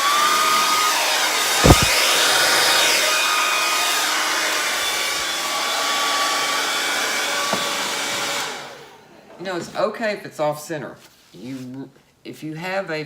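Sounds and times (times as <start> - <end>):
blow dryer running: 0.0 - 8.8
brief thump: 1.6 - 2.0.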